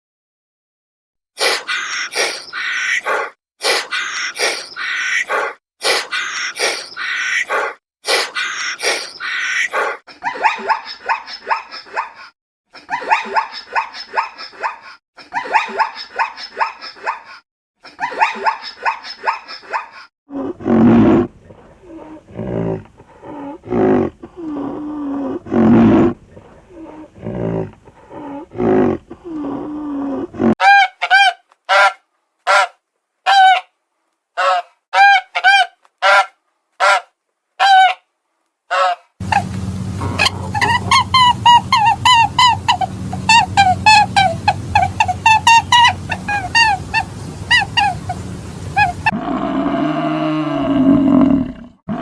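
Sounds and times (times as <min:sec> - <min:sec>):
animal calls: 0:01.4 - 0:33.7, 0:34.4 - 0:38.0, 0:38.7 - 0:52.0.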